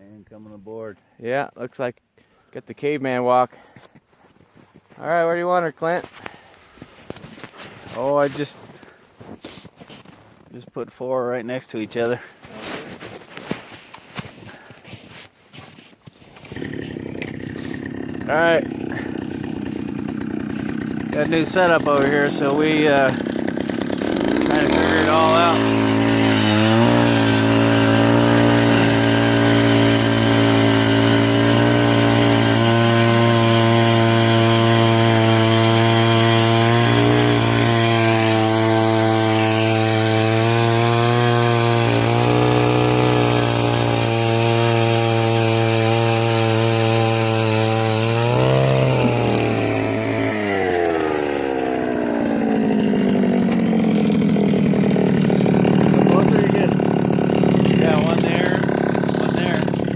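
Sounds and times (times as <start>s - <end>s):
ice auger engine drilling: 12.3s - 59.9s.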